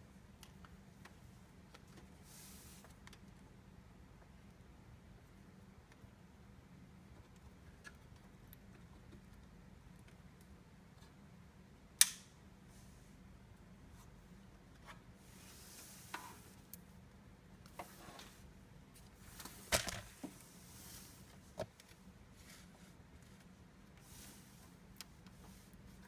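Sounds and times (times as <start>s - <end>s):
light rubbing of objects: 13.9s - 16.6s, 17.7s - 21.6s.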